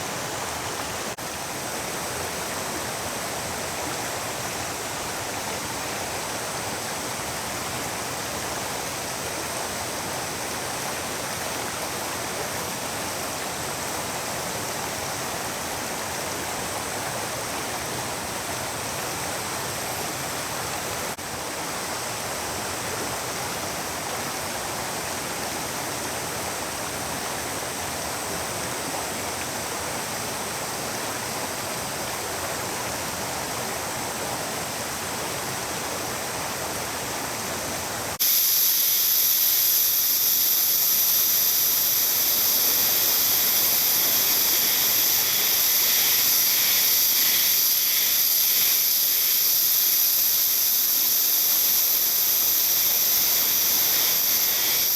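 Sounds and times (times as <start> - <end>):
river water rushing: 40.2 - 54.9.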